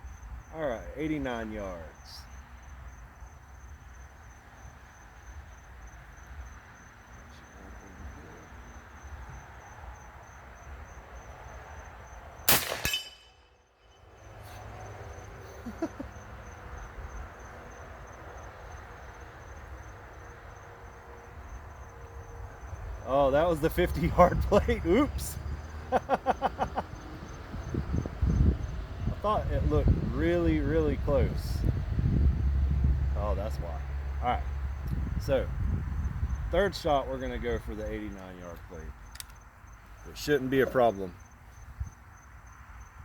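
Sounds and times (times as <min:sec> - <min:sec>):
night insects chirring: 0:00.0 - 0:43.0
air rifle shot: 0:12.5 - 0:13.5
low wind rumble: 0:15.1 - 0:43.0.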